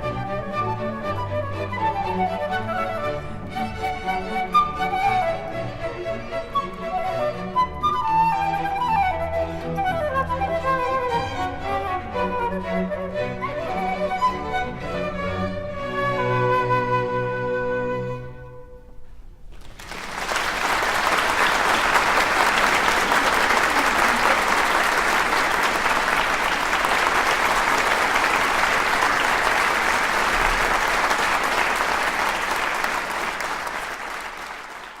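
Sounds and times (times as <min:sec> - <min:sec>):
audience applauding: 0:19.5 - 0:35.0.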